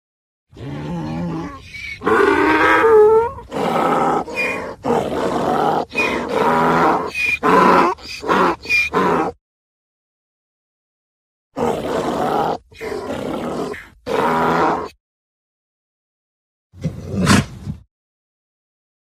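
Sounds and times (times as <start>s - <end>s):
donkey braying: 0.6s - 9.4s.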